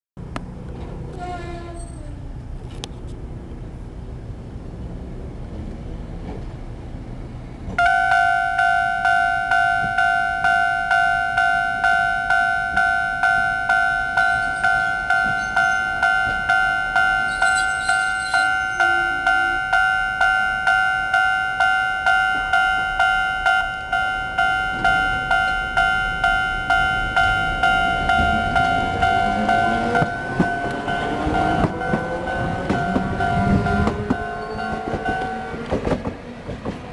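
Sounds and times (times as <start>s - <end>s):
tram motors whining: 0.2s - 36.9s
level-crossing alarm ringing: 7.8s - 35.6s.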